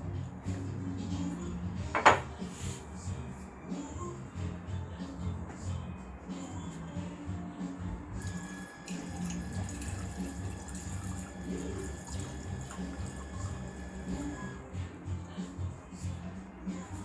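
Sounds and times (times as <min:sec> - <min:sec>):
water running: 0:08.2 - 0:14.7, 0:16.4 - 0:17.0.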